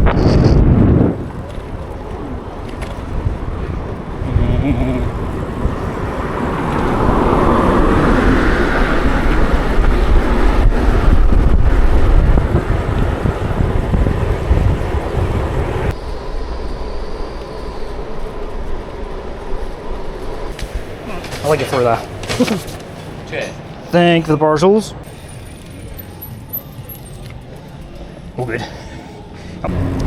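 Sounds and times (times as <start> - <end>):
wind rumble on microphone: 0.0 - 21.1
passing vehicles hissing: 0.0 - 30.0.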